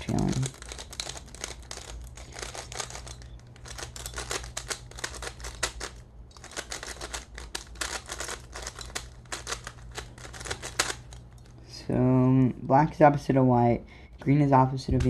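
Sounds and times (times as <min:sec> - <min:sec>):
plastic puzzle cube clicking: 0:00.1 - 0:11.1.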